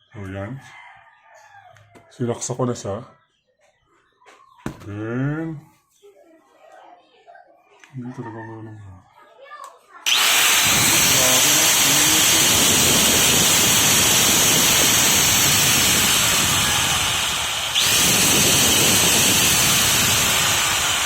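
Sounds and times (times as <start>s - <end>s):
power tool motor whine: 10.1s - 21.0s.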